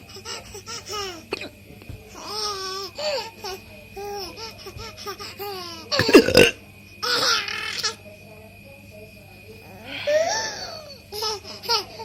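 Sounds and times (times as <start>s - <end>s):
man hiccuping: 6.0s - 6.6s.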